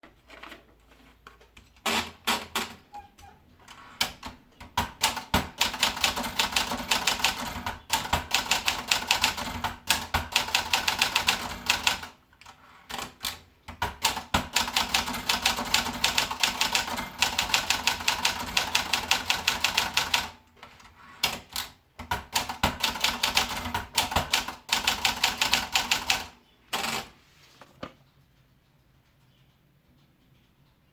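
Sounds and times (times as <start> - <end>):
typewriter keys striking: 12.9 - 20.4.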